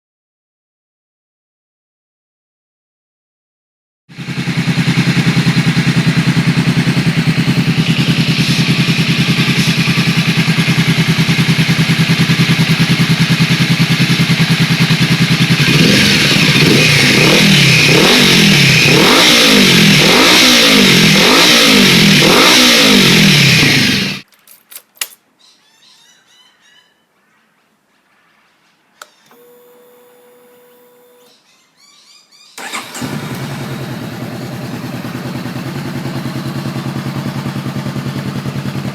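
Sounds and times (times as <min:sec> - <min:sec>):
motorcycle engine idling and revving: 0:04.1 - 0:24.3, 0:32.6 - 0:38.9.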